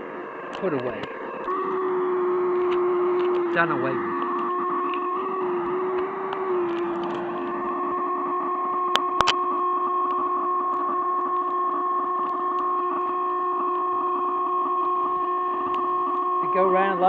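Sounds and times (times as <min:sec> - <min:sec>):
whistling electronic drone: 0:00.0 - 0:17.0
sharp clicks: 0:08.9 - 0:09.4.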